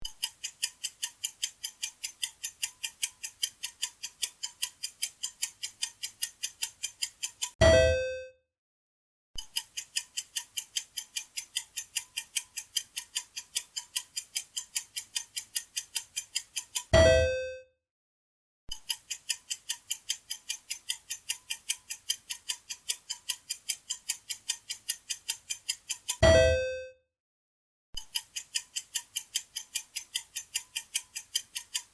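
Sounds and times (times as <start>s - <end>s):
rapid clock ticking: 0.0s - 7.6s, 9.5s - 16.9s, 18.7s - 26.2s, 28.0s - 31.9s
bell-like chime: 7.6s - 8.3s, 17.0s - 17.6s, 26.2s - 26.9s.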